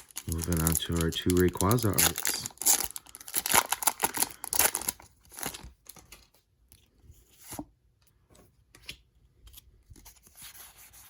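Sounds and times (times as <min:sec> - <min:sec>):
foil wrapper crinkling and tearing: 0:00.0 - 0:06.3
cards rustling: 0:00.0 - 0:06.4.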